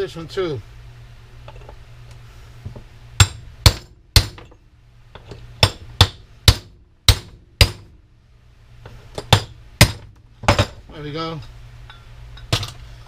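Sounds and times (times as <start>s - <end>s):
hammer striking metal: 3.2s - 4.6s.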